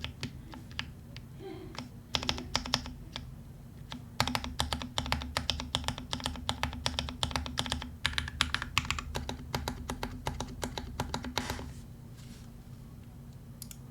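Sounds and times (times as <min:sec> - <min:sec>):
fast mechanical keyboard typing: 0:00.0 - 0:01.0, 0:01.8 - 0:03.3, 0:03.9 - 0:11.7.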